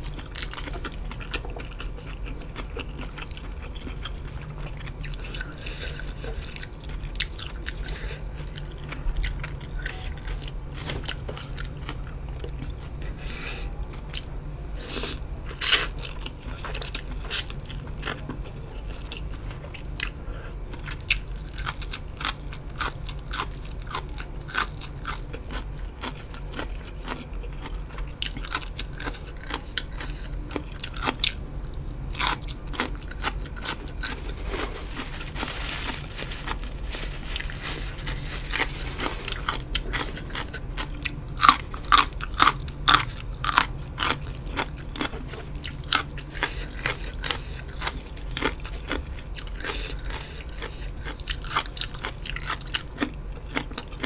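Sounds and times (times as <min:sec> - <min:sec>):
crunchy chewing and bites: 0:32.1 - 0:54.0.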